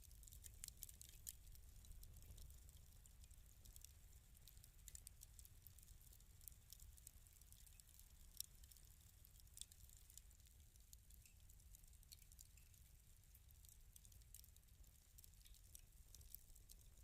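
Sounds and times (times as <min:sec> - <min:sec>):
fireplace fire crackling: 0:00.0 - 0:17.0.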